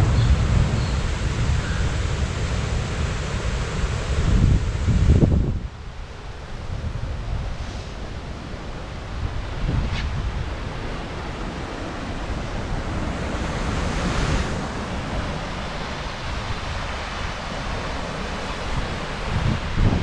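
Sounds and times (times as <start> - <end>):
waterfall rushing: 0.0 - 5.2, 10.4 - 20.0
wind buffeting microphone: 0.0 - 20.0.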